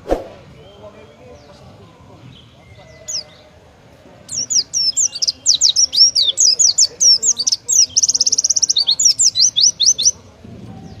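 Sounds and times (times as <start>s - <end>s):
bird singing rapid high notes: 4.3s - 10.2s
bird trill: 4.3s - 10.2s.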